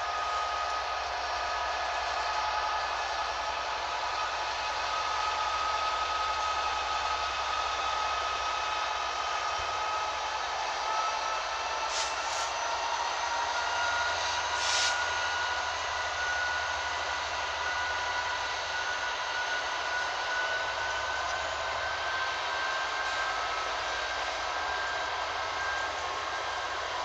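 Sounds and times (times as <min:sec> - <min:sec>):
diesel locomotive rumble: 0:00.0 - 0:27.0
high hisses: 0:11.9 - 0:12.5, 0:14.1 - 0:15.1.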